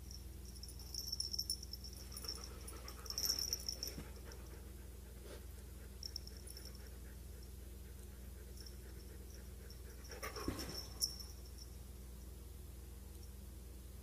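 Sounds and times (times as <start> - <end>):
steady low hum: 0.0 - 14.0
dog panting: 2.2 - 11.1.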